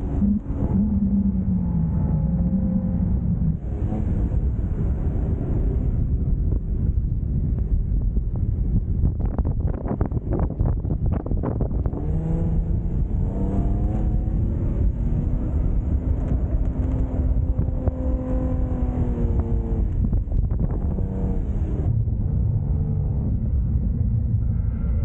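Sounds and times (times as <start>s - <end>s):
low rumble: 0.0s - 25.0s
engine revving hard: 11.8s - 20.0s.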